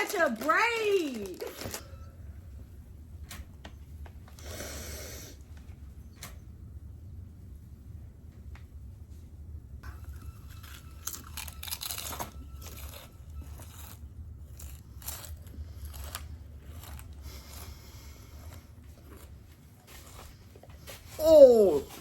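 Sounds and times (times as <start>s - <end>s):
crunching and chewing crispy snack: 9.9s - 20.7s.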